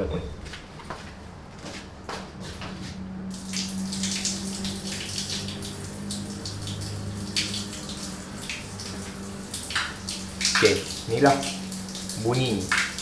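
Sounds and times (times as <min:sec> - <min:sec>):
low steady hum: 0:02.5 - 0:13.0
water running from a tap: 0:03.2 - 0:13.0.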